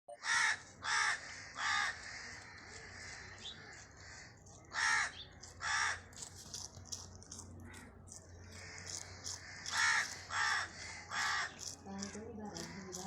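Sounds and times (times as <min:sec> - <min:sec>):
harsh animal calls: 0:07.6 - 0:13.0.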